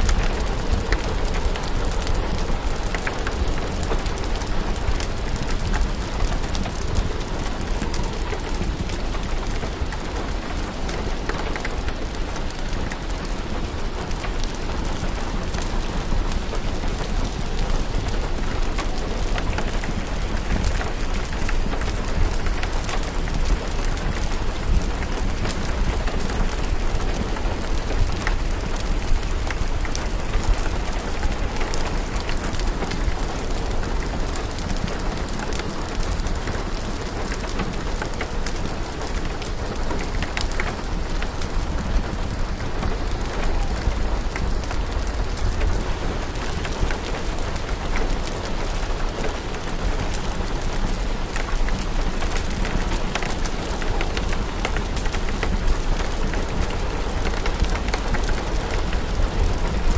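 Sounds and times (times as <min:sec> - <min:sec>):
log fire crackling: 0:00.0 - 0:59.9
steady rain: 0:00.0 - 0:59.9.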